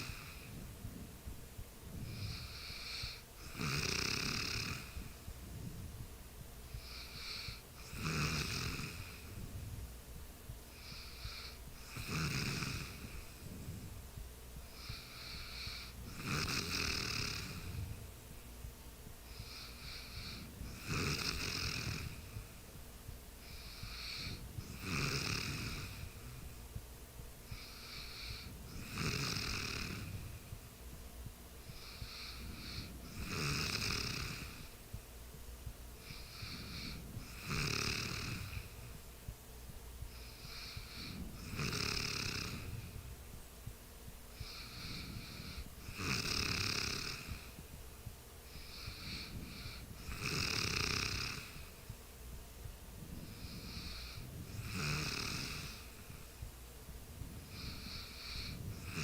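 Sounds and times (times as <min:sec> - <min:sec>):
soft breathing: 0:00.0 - 0:10.0, 0:10.7 - 0:18.5, 0:19.2 - 0:26.7, 0:27.4 - 0:35.0, 0:35.6 - 0:39.1, 0:39.7 - 0:59.0
person snoring: 0:02.0 - 0:05.2, 0:06.8 - 0:09.4, 0:10.7 - 0:13.8, 0:14.8 - 0:18.0, 0:19.3 - 0:22.4, 0:23.5 - 0:26.4, 0:27.5 - 0:30.4, 0:31.7 - 0:34.7, 0:36.0 - 0:38.8, 0:40.1 - 0:43.0, 0:44.4 - 0:47.6, 0:48.5 - 0:51.7, 0:53.2 - 0:56.2, 0:57.4 - 0:59.0.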